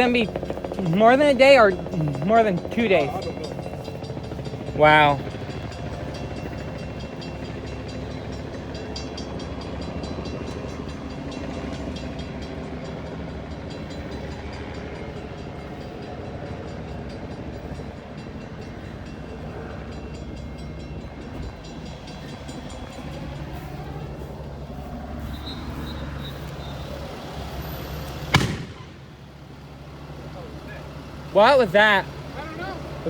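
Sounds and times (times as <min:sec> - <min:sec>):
heavy engine rumbling: 0:00.0 - 0:33.0.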